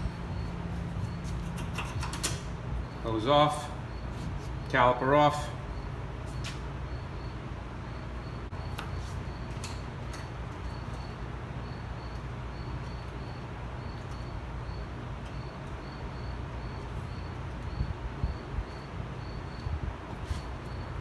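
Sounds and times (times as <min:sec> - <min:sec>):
low steady rumble: 0:00.0 - 0:01.6
cricket chirping: 0:00.0 - 0:04.2, 0:05.6 - 0:21.0.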